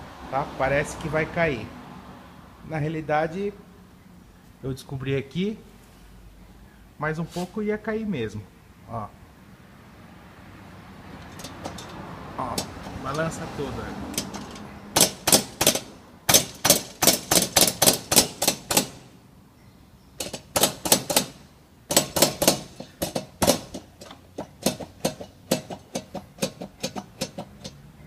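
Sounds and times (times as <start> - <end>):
loose car panel knocking: 11.2 - 13.4, 14.1 - 19.1, 20.2 - 27.8.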